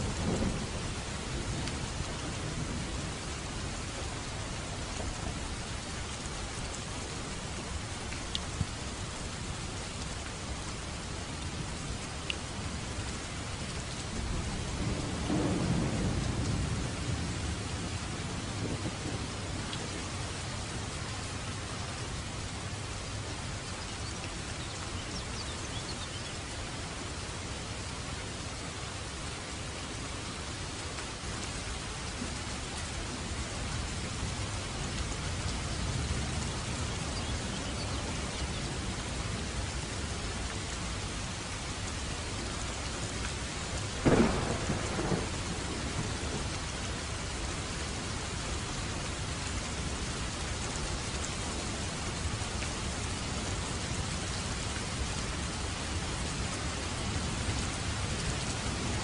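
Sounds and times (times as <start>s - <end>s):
steady rain: 0.0s - 59.0s
thunderclap: 44.0s - 46.5s.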